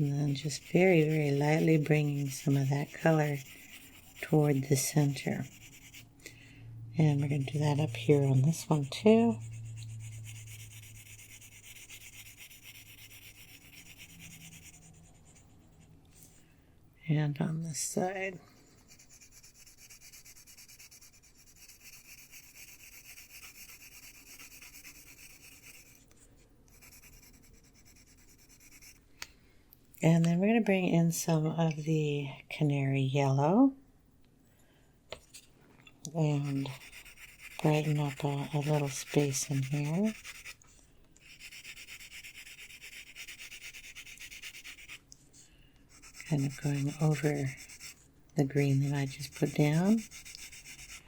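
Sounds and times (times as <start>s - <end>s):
pencil scratching on paper: 0.0s - 6.1s, 7.0s - 15.9s, 18.1s - 29.0s, 36.1s - 45.1s, 45.9s - 51.0s.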